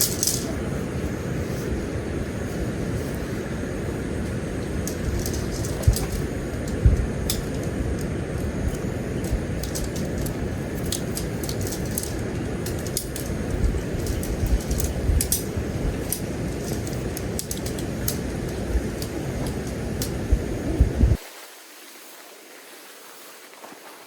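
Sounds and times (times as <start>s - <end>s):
small clicks and rattles: 0.0s - 0.6s, 4.2s - 21.2s.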